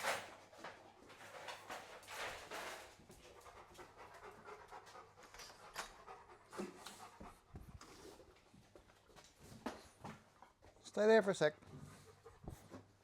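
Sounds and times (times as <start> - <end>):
dog panting: 3.0 - 8.9, 11.7 - 13.0.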